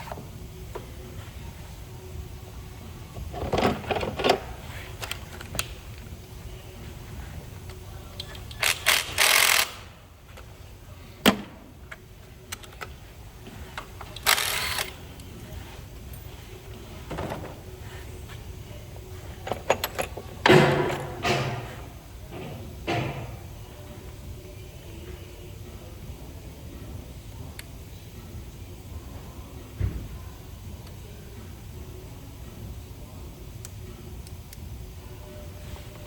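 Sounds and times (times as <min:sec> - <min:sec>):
tools knocking and clunking: 0:17.0 - 0:17.6, 0:19.4 - 0:23.4.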